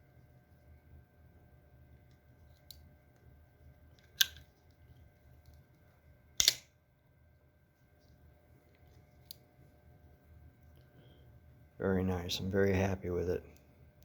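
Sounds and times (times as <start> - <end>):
switchblade clicking and snapping: 6.4 - 6.7.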